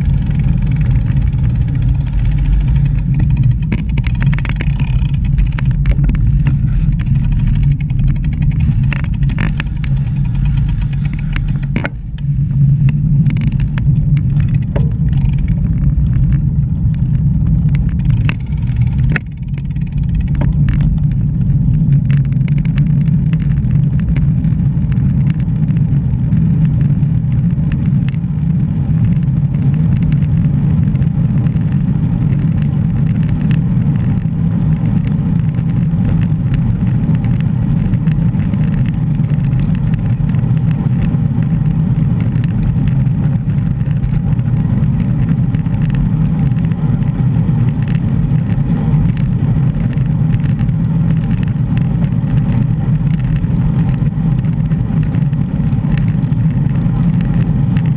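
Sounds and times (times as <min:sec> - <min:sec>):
light clicks and ticks: 0:00.0 - 0:25.8
wind and road rumble: 0:00.0 - 0:57.9.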